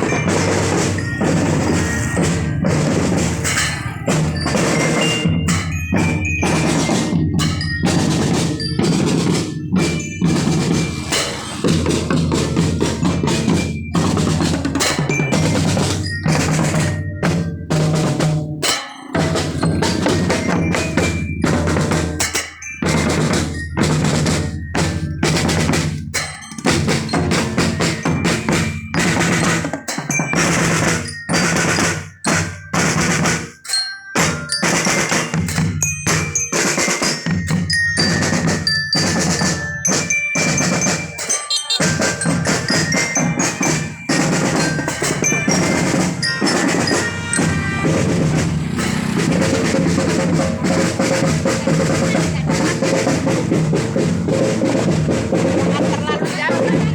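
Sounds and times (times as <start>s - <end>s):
glockenspiel melody: 0.0s - 56.9s
marching snare and bass drums: 0.0s - 56.9s.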